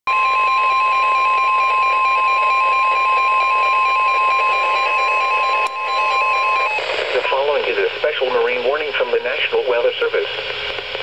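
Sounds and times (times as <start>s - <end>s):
tone alternating between two pitches: 0.1s - 6.8s
loud steady alarm tone: 0.1s - 7.8s.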